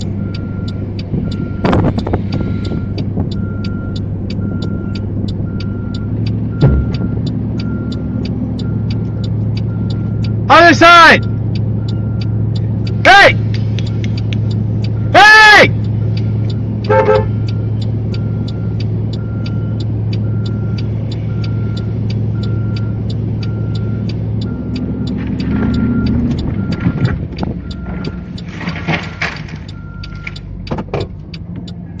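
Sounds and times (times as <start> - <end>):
low engine hum: 0.0 - 32.0
short beeps: 2.6 - 8.0.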